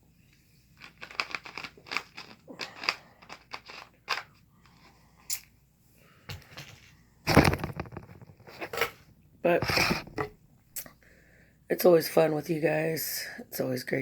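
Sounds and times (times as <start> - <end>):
chewing noodles: 0.7 - 5.5.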